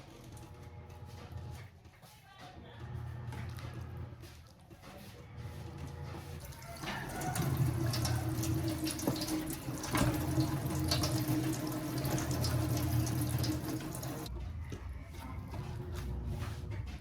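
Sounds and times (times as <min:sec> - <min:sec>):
tap running into a sink: 0:06.5 - 0:14.3.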